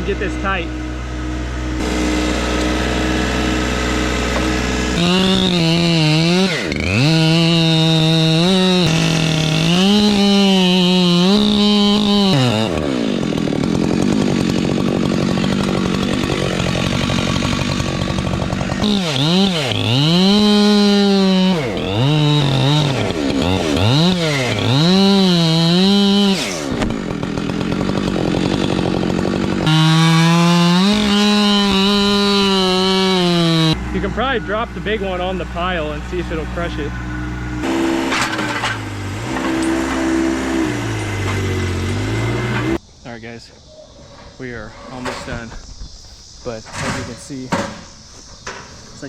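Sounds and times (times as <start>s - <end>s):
chainsaw cutting logs: 0.0s - 42.8s.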